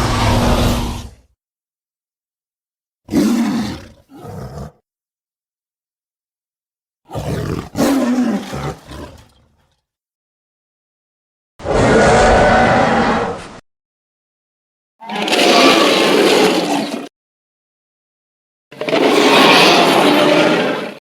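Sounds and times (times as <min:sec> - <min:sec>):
dinosaur roars: 0:00.0 - 0:01.2, 0:11.6 - 0:13.6, 0:15.0 - 0:17.1, 0:18.8 - 0:21.0.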